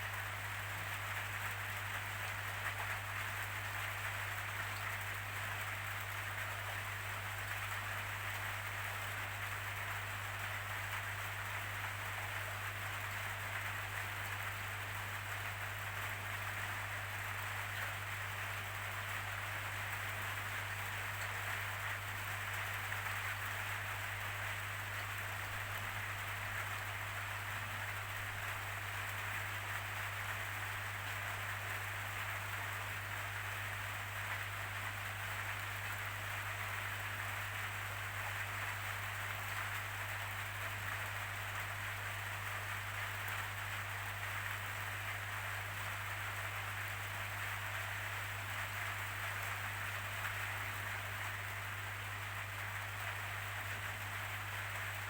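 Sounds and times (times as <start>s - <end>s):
steady rain: 0.0s - 55.0s.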